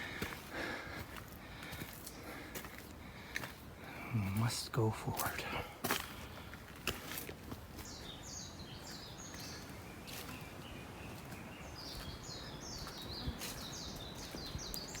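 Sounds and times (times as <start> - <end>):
songbird singing: 7.7 - 15.0.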